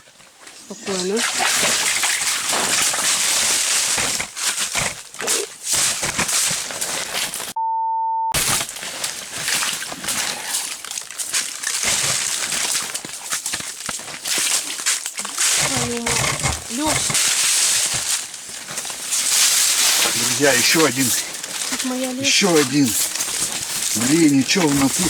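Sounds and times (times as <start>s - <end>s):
scuffs and rustles: 0.0s - 7.6s, 8.5s - 25.0s
censor bleep: 7.6s - 8.4s.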